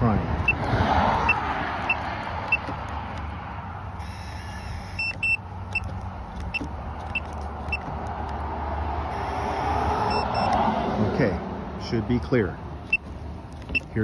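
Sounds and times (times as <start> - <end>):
electronic lock beeps: 1.2 - 2.7, 4.0 - 5.9, 10.0 - 10.6.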